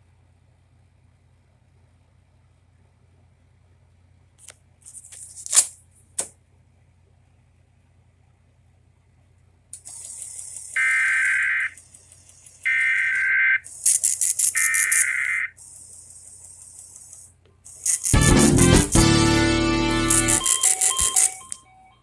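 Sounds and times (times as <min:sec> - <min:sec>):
crackling radio hiss: 0:10.0 - 0:15.6
warbling digital tones: 0:10.4 - 0:15.5
harsh distorted sound: 0:17.7 - 0:21.5.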